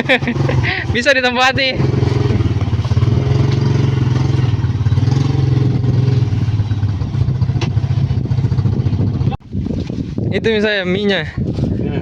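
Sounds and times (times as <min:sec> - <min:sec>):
motorcycle engine running: 0:00.0 - 0:09.4.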